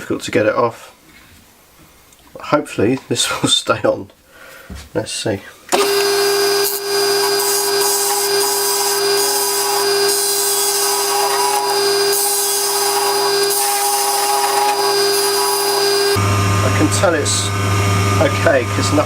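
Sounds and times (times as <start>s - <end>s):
turning tool cutting hiss: 5.7s - 16.2s
wood lathe humming: 5.7s - 19.0s.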